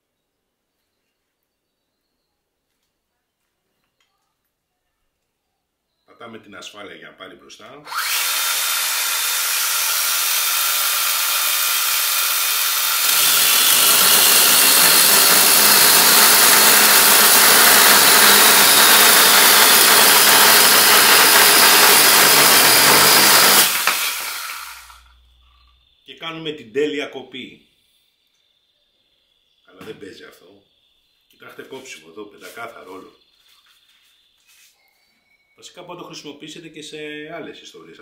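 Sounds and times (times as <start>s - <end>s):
chainsaw cutting through branch: 7.9s - 25.0s
battery chainsaw whining: 7.9s - 25.2s.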